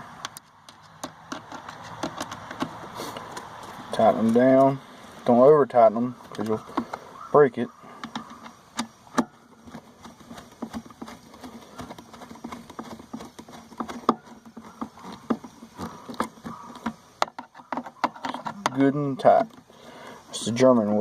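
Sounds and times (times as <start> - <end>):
screwdriver clicks and taps: 0.2 - 3.5.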